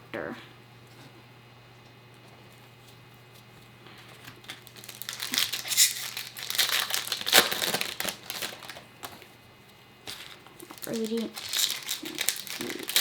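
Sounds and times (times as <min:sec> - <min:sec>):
foil wrapper crinkling: 0:04.2 - 0:09.3, 0:10.0 - 0:13.0.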